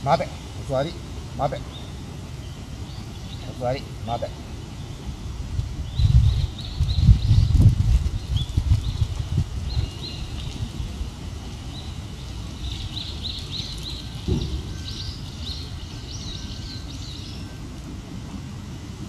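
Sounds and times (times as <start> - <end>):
outdoor background rumble: 0.0 - 19.0
soft thump: 14.3 - 14.8.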